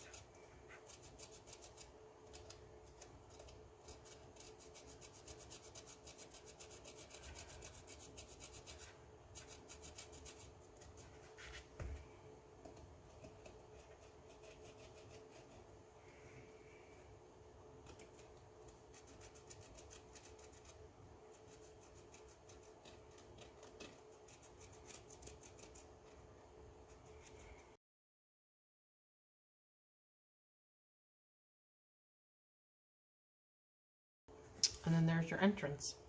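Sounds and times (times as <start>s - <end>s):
marker scratching over twine: 0.0s - 11.8s, 17.8s - 26.2s.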